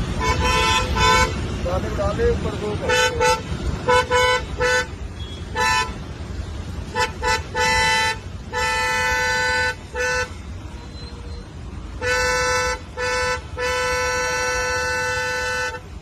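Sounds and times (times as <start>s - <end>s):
car horn honking: 0.0s - 1.7s, 2.8s - 6.1s, 6.8s - 16.0s
low road and engine rumble: 0.0s - 16.0s.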